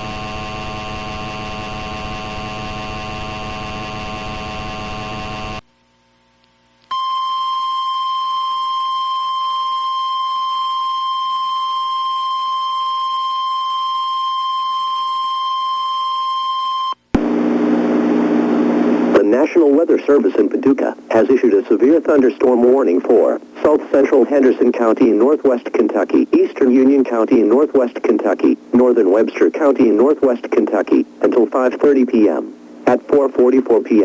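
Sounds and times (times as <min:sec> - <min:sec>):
buzzing alarm tone: 0:00.0 - 0:05.6
steady high warning tone: 0:00.0 - 0:05.6, 0:17.2 - 0:34.0.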